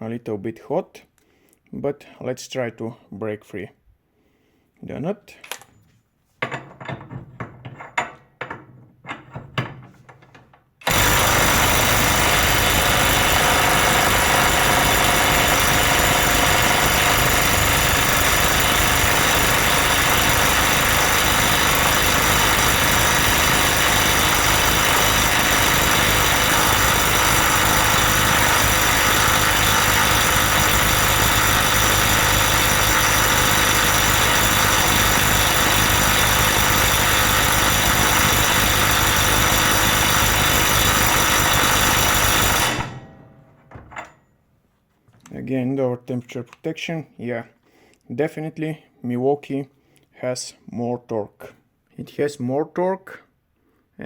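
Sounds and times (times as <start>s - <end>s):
impact wrench hammering: 10.8s - 43.9s.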